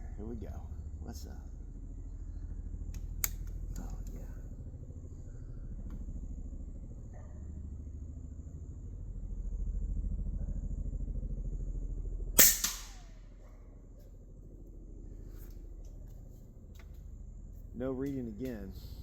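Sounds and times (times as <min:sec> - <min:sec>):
low pulsing rumble: 0:00.0 - 0:19.0
air rifle firing crack: 0:12.4 - 0:13.2.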